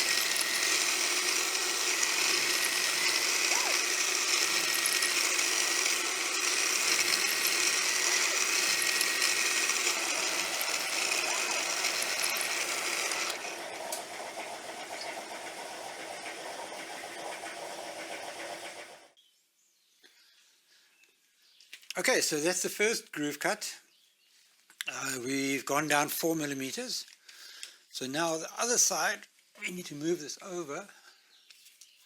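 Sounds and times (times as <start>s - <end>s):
milling machine cutting steel: 0.0s - 19.1s.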